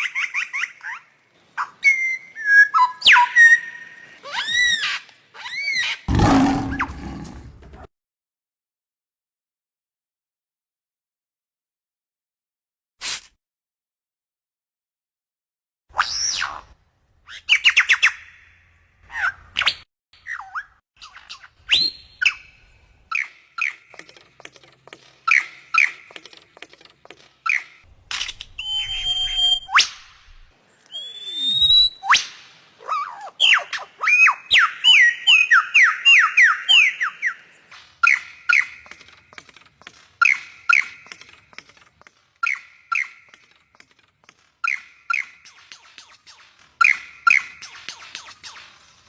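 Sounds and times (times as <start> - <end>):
bird chirping: 17.3 - 32.0, 32.8 - 49.0.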